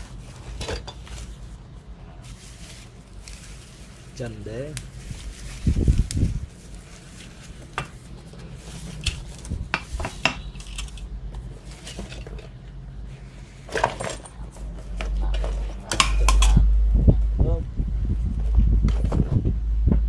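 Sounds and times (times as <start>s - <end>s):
metal parts clinking: 10.0s - 12.6s, 13.7s - 16.6s
low rumble: 14.4s - 20.0s.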